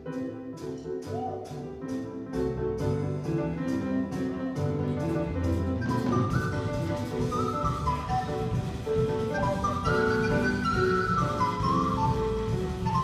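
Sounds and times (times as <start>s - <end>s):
live jazz band: 0.0s - 13.0s
sliding melody line: 3.7s - 13.0s
walking bass line: 4.6s - 13.0s.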